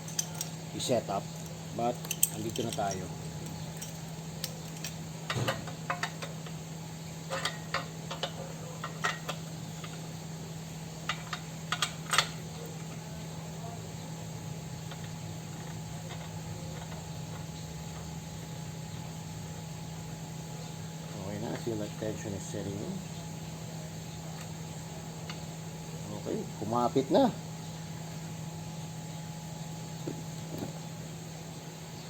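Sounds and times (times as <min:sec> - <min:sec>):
steady low hum: 0:00.0 - 0:32.0
metallic clicks of gear puller: 0:02.0 - 0:06.4.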